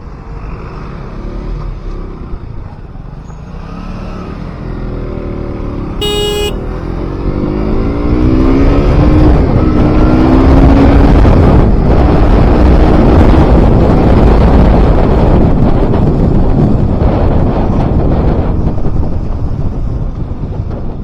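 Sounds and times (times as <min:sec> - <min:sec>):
motorcycle engine accelerating: 0:03.7 - 0:13.6
horn toot: 0:06.0 - 0:06.7
wind rush: 0:10.5 - 0:21.0.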